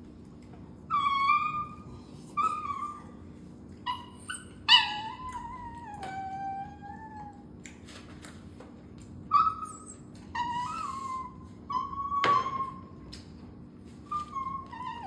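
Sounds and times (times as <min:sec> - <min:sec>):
dog whining: 0:00.9 - 0:07.6, 0:09.3 - 0:13.1, 0:14.0 - 0:15.0.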